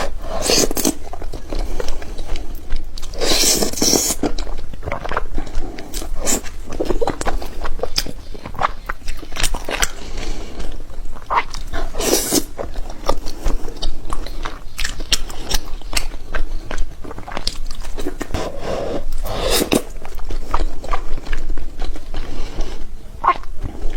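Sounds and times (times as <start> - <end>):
person biting and chewing: 0.0 - 23.9.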